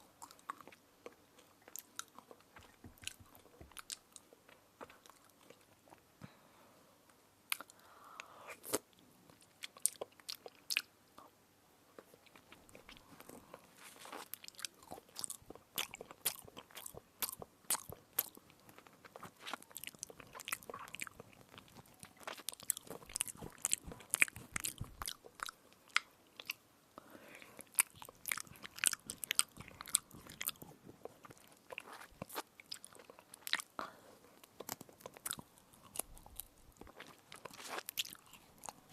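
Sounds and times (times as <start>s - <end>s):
biting and crunching: 12.4s - 26.6s, 27.7s - 33.7s, 34.5s - 38.9s.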